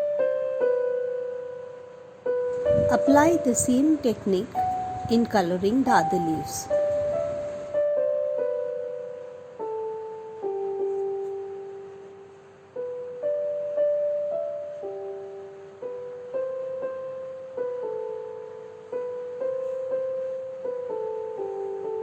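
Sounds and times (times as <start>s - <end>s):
gentle piano music: 0.0s - 22.0s.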